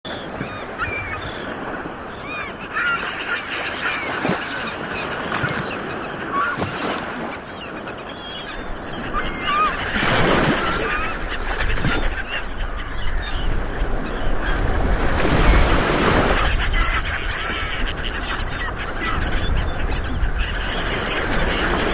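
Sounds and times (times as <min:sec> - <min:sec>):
ocean waves on shore: 0:00.0 - 0:21.9
birds calling: 0:00.1 - 0:21.9.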